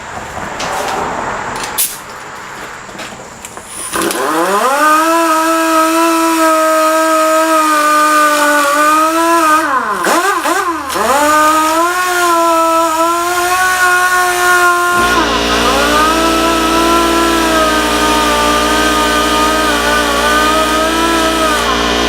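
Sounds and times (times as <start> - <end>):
grinder motor whine: 2.2 - 22.0.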